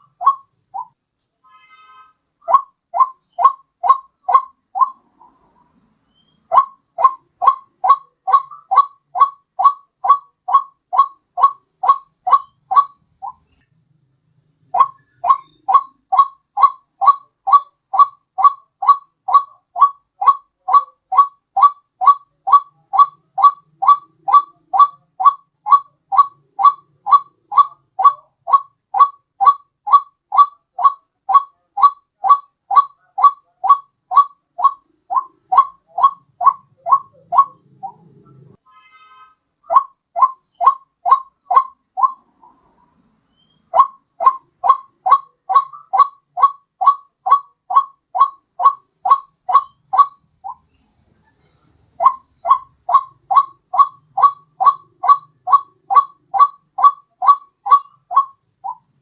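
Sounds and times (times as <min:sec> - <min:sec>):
bird call rising notes: 0:00.0 - 0:00.9, 0:02.4 - 0:13.7, 0:14.7 - 0:38.5, 0:39.6 - 0:50.9, 0:52.0 - 0:58.9.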